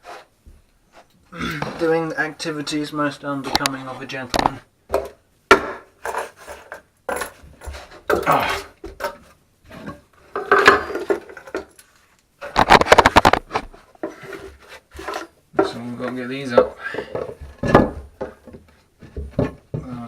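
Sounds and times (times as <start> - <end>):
tools knocking and scraping: 4.4 - 20.0.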